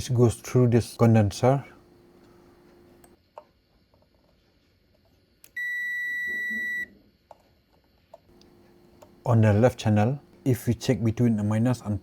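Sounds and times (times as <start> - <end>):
multimeter continuity beep: 5.5 - 7.0.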